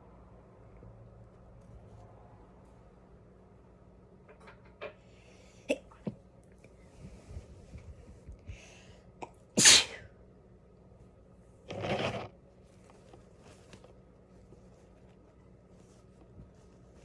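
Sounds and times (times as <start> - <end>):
person sneezing: 9.6 - 10.1.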